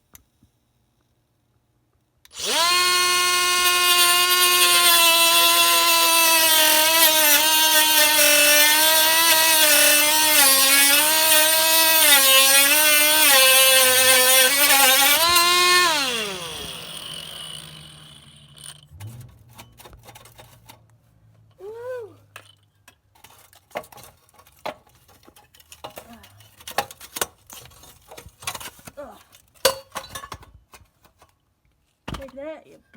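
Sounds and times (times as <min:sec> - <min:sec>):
die grinder cutting metal: 0:02.3 - 0:20.6.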